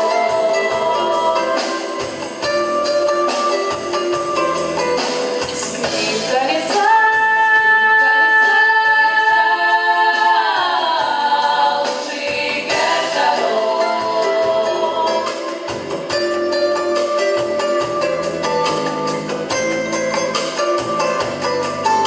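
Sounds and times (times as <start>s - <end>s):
vocal ensemble singing in harmony: 0.0s - 2.6s, 5.4s - 16.2s
light backing music: 0.0s - 22.0s.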